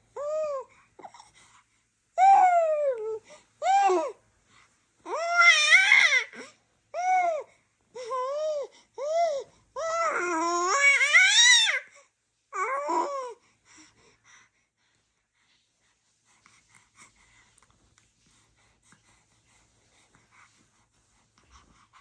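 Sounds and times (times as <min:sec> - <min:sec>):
baby babbling: 0:02.2 - 0:04.2.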